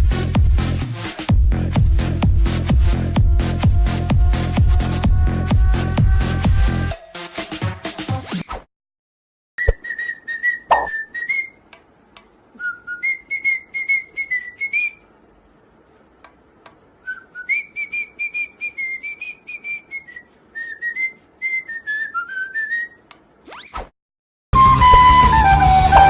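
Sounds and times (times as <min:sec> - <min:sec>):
person whistling a tune: 0:09.6 - 0:11.6, 0:12.6 - 0:15.0, 0:17.1 - 0:23.0, 0:24.7 - 0:26.0
faint clicking: 0:16.2 - 0:16.8.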